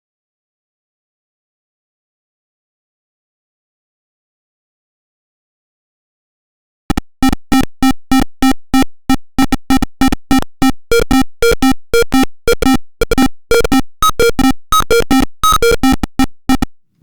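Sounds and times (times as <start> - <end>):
bouncy synthesizer melody: 9.4 - 16.7.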